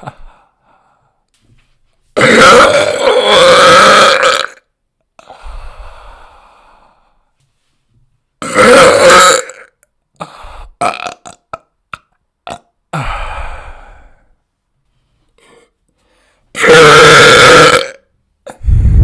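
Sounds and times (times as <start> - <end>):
person burping: 2.2 - 4.7, 8.4 - 9.8, 10.8 - 13.2, 16.6 - 19.0.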